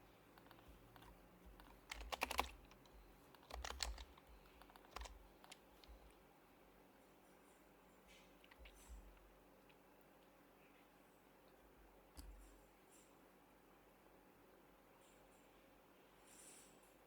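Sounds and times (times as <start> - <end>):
soft keyboard keystrokes: 0.3 - 6.2, 8.4 - 9.8.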